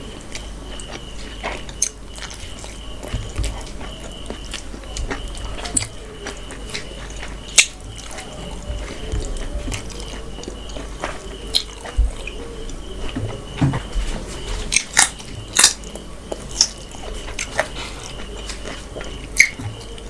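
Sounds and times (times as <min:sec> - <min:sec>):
chewing with wet mouth clicks: 0:00.2 - 0:13.3, 0:14.7 - 0:20.0.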